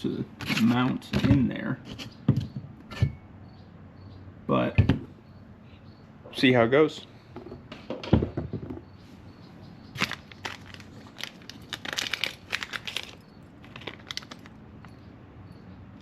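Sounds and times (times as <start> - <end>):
knock: 7.4 - 8.8
packaging crinkling and rustling: 9.9 - 15.0.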